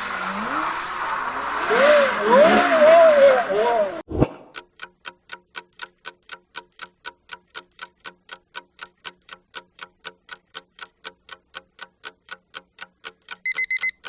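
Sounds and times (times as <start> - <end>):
clock ticking: 4.5 - 14.0.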